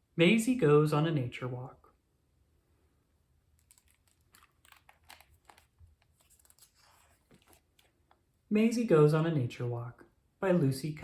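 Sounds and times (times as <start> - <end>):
book pages rustling: 3.5 - 8.4.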